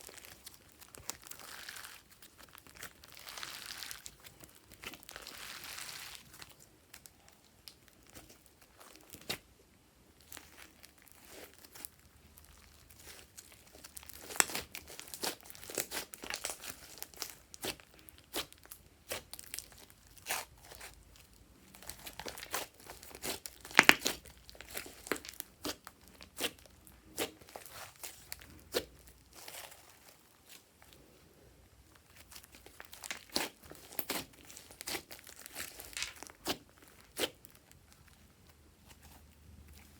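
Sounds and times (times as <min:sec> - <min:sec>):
slime squeezed with sticky pops: 0:21.9 - 0:26.6.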